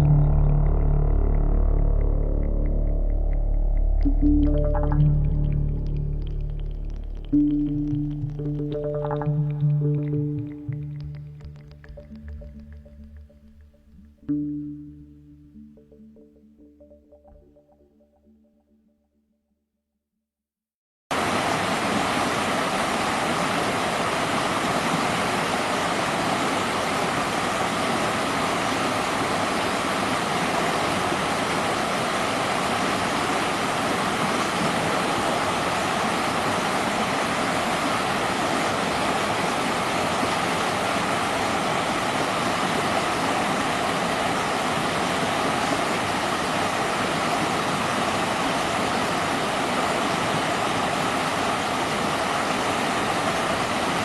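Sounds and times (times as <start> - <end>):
river water rushing: 21.1 - 54.0.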